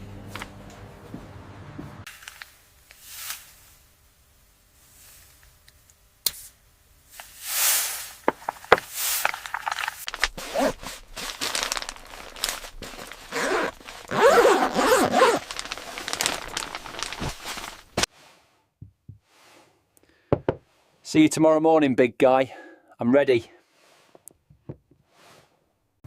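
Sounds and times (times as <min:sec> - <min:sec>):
rustling and crinkling: 0:07.1 - 0:18.1
bag zipper pulled: 0:10.0 - 0:18.1.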